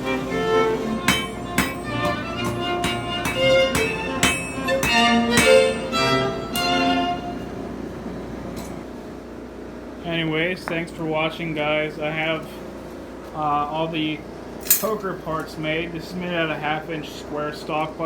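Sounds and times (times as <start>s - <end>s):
fiddle melody: 0.0s - 7.5s.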